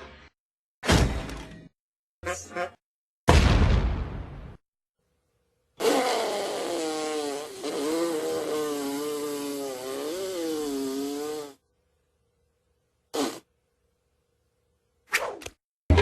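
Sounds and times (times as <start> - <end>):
cartoon motor buzzing: 5.8 - 11.6.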